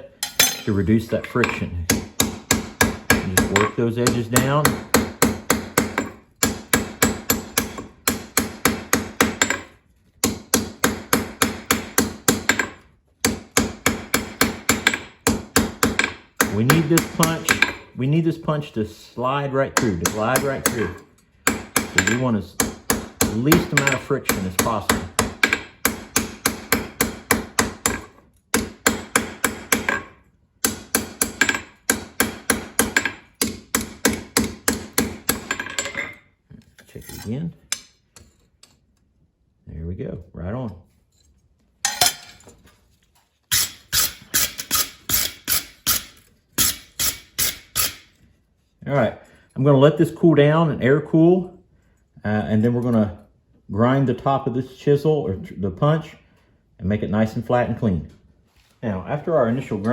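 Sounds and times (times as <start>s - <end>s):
hammer striking steel on anvil: 0.2s - 17.9s, 19.8s - 36.2s, 43.5s - 48.1s.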